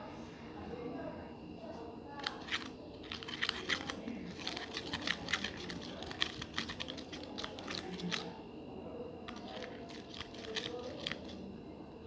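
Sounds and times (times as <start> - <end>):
spoon scraping against cup: 2.2 - 8.3, 9.3 - 11.4.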